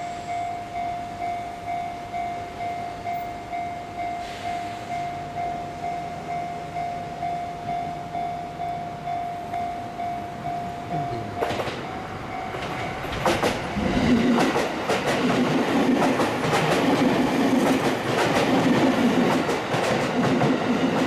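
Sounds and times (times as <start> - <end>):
level-crossing warning bell ringing: 0.0 - 13.9.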